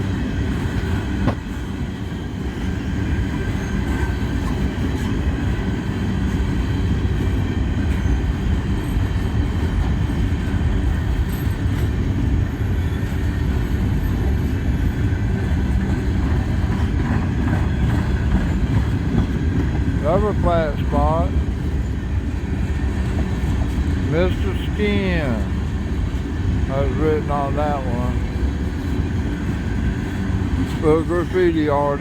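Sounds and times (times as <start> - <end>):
train wheels rumbling on rail: 0.0 - 32.0
high squeal from train wheels: 0.8 - 19.2.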